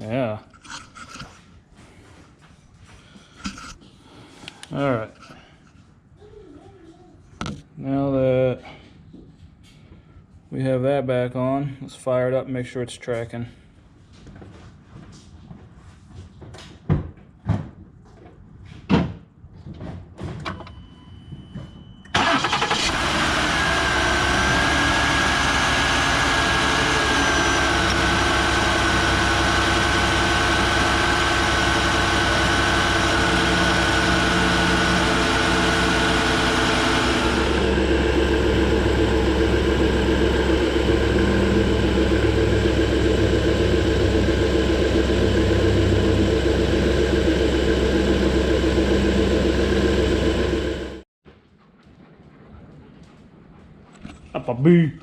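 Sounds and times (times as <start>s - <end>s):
car engine starting and idling: 22.1s - 51.0s.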